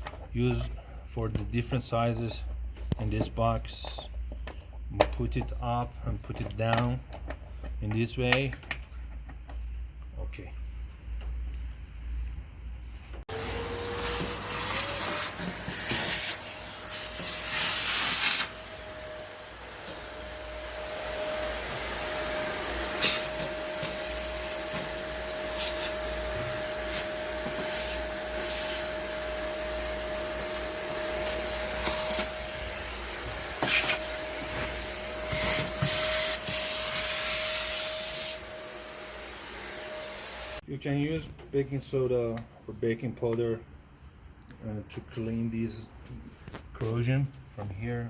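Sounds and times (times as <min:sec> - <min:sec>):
vacuum cleaner motor whine: 0:13.3 - 0:40.6.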